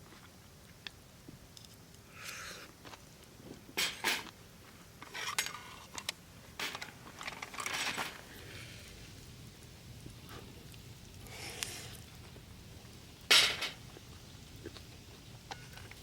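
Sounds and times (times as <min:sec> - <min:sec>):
cookware clinking and scraping: 0:03.8 - 0:04.3.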